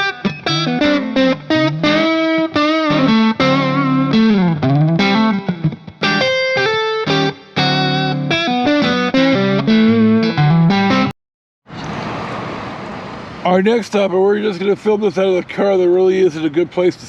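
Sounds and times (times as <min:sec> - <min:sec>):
distorted electric guitar riff: 0:00.0 - 0:11.1.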